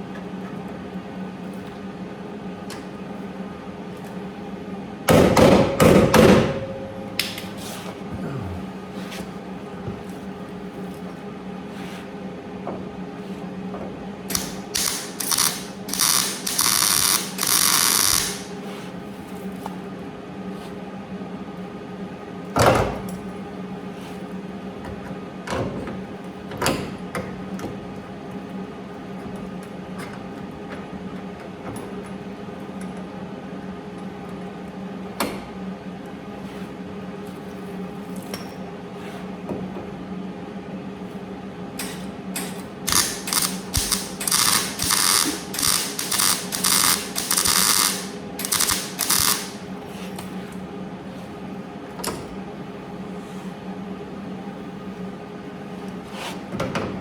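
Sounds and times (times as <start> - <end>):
electrical hum: 0.0 - 57.0
welding bursts: 14.3 - 18.5, 42.9 - 49.6
sharp clicks: 42.9 - 49.5.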